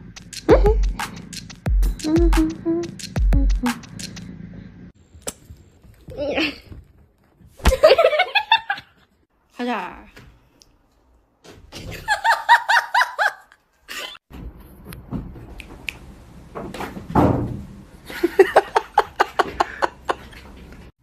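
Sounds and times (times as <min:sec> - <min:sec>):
person laughing: 0:00.5 - 0:00.8, 0:18.1 - 0:20.4
noisy bump: 0:16.6 - 0:17.8.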